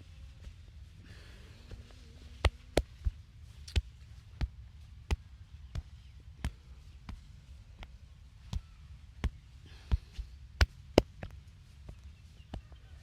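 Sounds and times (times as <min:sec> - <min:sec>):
low steady hum: 0:00.0 - 0:13.0
percussive massage strikes: 0:02.3 - 0:11.5.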